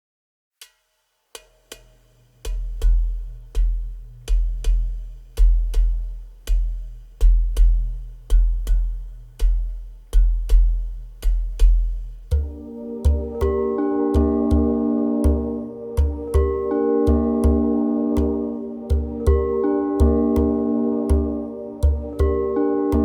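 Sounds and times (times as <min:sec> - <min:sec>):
deep electronic drum beat: 0:02.5 - 0:23.0
sustained synth chords: 0:12.4 - 0:23.0.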